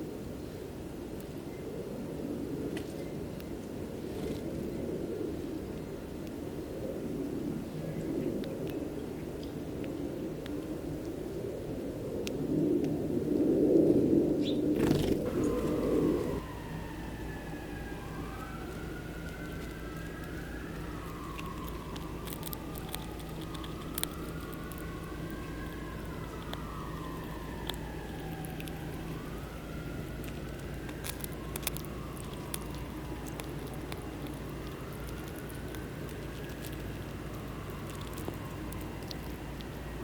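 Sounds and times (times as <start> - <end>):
sirens wailing: 14.8 - 40.0
steady low hum: 14.8 - 40.0.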